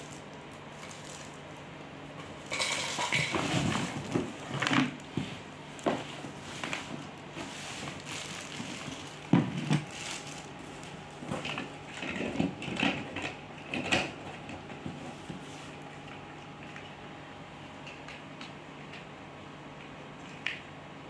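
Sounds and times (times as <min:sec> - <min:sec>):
packaging rustling: 0:00.0 - 0:01.4, 0:05.8 - 0:11.5.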